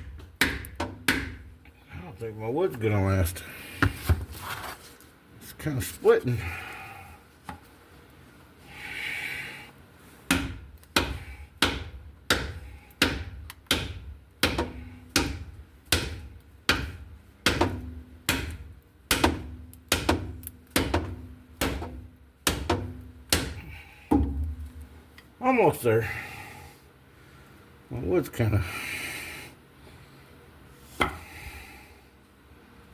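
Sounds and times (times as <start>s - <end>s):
hammer pounding on wood: 0.0s - 1.5s, 10.3s - 24.6s.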